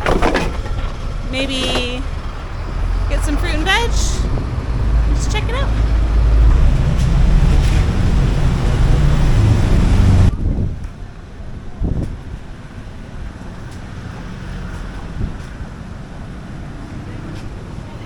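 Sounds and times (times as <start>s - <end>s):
outdoor background noise: 0.0s - 18.0s
wind rumble on microphone: 0.7s - 18.0s.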